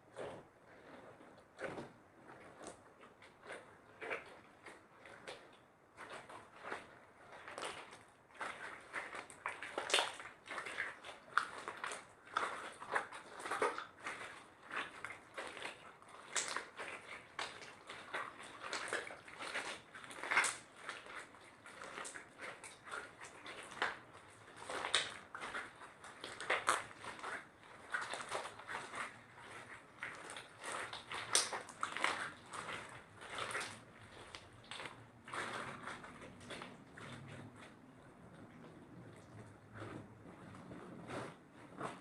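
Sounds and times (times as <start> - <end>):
slime squelching by hand: 0.0 - 42.0.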